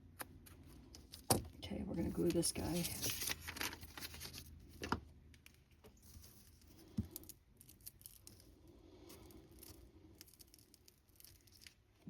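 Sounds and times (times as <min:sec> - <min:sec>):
paper rustling: 0:02.0 - 0:05.0.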